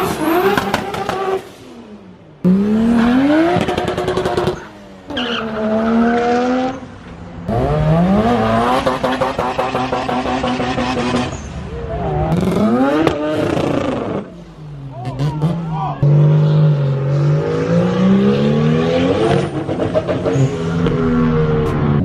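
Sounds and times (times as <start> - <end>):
car engine accelerating hard: 7.5 - 14.3.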